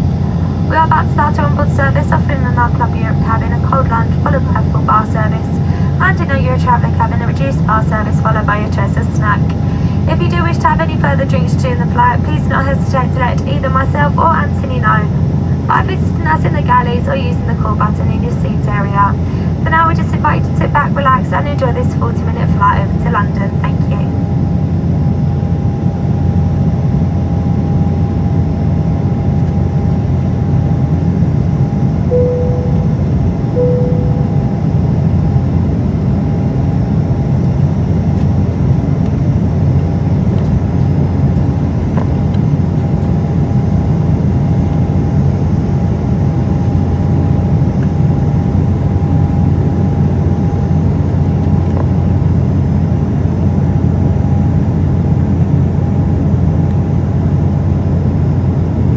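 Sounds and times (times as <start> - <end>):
airliner cabin engine drone: 0.0 - 58.9
short chime tones: 32.1 - 34.6
thin steady whine: 32.1 - 34.9.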